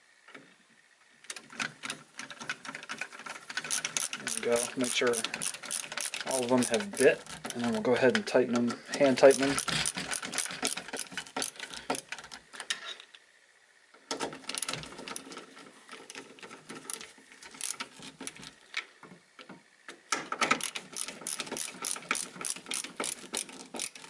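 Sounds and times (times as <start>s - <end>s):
screwdriver rapid clicking: 3.6s - 7.6s, 9.0s - 12.3s, 20.4s - 24.0s.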